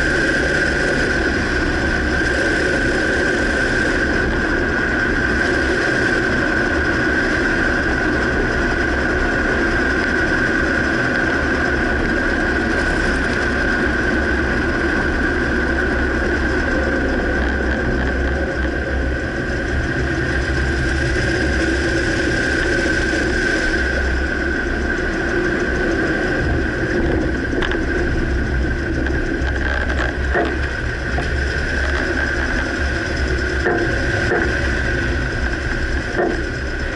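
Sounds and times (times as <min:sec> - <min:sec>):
constant high whine: 0:00.0 - 0:36.9
pickup truck engine rumble: 0:11.0 - 0:36.9.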